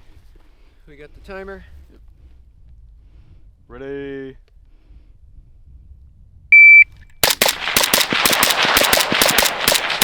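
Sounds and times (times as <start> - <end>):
shot timer beep: 6.5 - 6.9
rapid suppressed rifle shots: 7.2 - 10.0.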